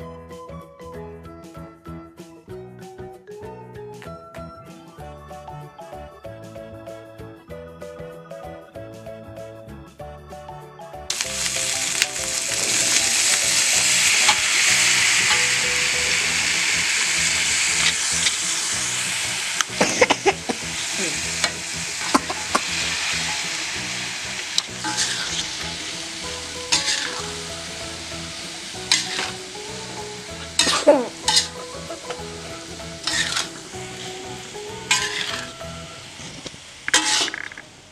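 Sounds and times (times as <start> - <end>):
food sizzling in oil: 11.1 - 37.9
utensil scraping a pan: 11.9 - 15.6, 24.5 - 25.8, 26.6 - 27.5, 28.8 - 29.6, 30.2 - 32.2, 32.8 - 34.2, 34.8 - 35.6, 36.2 - 37.6.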